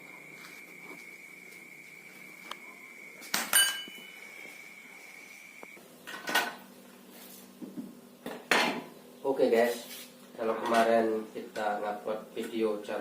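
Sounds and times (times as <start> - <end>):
faint high whine: 0.0 - 5.8.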